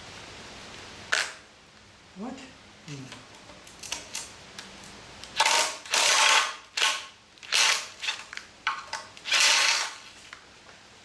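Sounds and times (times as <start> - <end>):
hand ratchet wrench clicking: 9.2 - 10.0.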